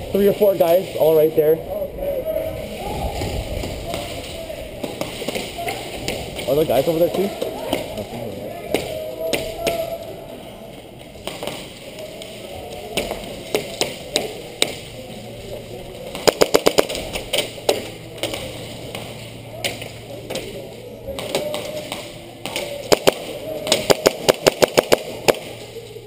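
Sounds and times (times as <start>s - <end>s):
airsoft gun full-auto burst: 16.2s - 17.2s, 22.8s - 25.6s.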